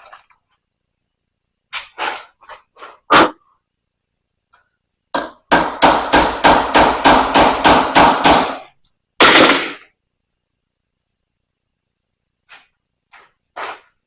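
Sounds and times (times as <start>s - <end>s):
hammer striking metal punch: 5.2s - 8.6s.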